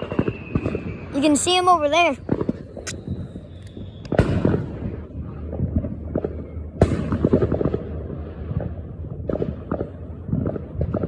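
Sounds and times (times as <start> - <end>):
crackling firework pops: 0.0 - 1.1, 2.2 - 11.0
firework bangs: 2.2 - 11.0.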